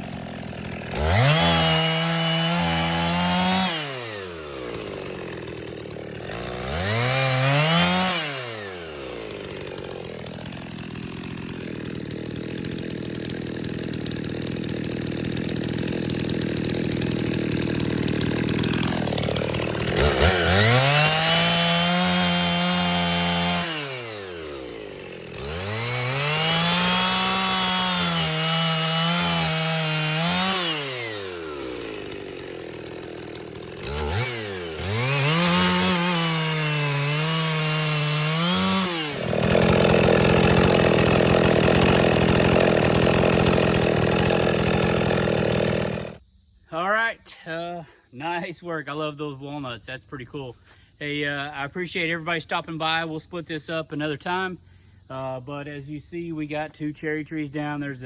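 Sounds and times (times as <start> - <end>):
chainsaw engine revving: 0.0 - 46.2.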